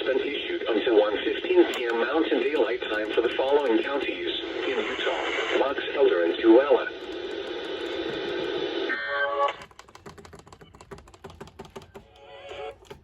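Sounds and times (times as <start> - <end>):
radio hiss: 0.0 - 7.6
rapid irregular clicking: 1.2 - 13.0.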